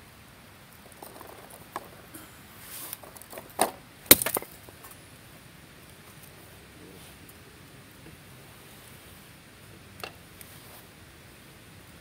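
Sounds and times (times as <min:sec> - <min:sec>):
firewood cracking: 0:02.9 - 0:05.0.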